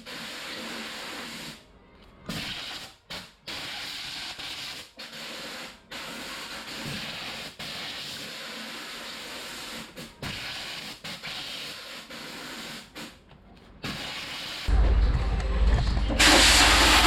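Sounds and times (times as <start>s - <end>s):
low machine hum: 14.7s - 17.0s
compressed air hissing: 16.2s - 17.0s.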